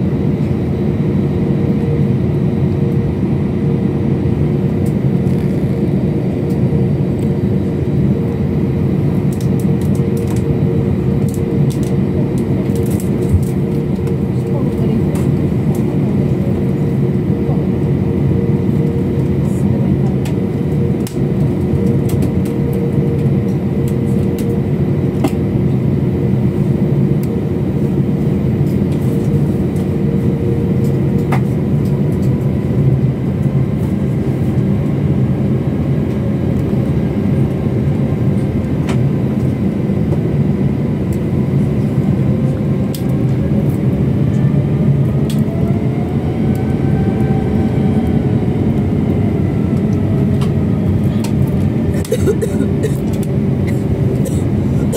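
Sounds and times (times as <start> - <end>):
airliner engines rumbling: 0.0 - 54.9
rising whine: 20.3 - 52.0.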